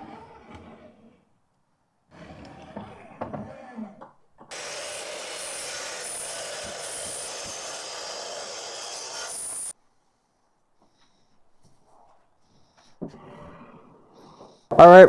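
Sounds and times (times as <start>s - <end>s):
power saw cutting wood: 4.5s - 9.8s.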